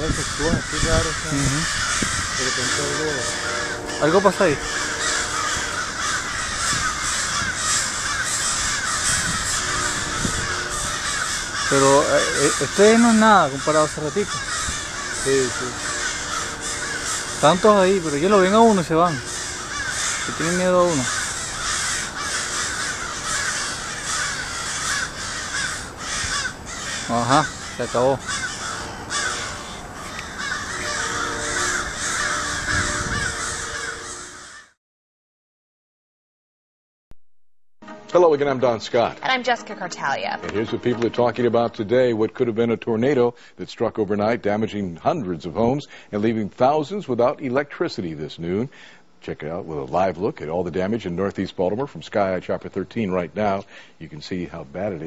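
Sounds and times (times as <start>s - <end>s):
crows cawing: 0.0s - 34.8s.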